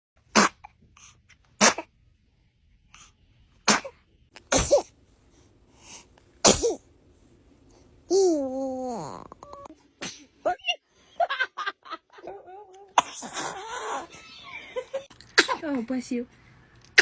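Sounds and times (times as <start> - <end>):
baby sneezing: 0.3 - 0.7, 1.6 - 1.9, 3.7 - 4.9, 6.4 - 6.8, 15.4 - 15.6
baby drawn-out voiced sound: 8.1 - 9.7.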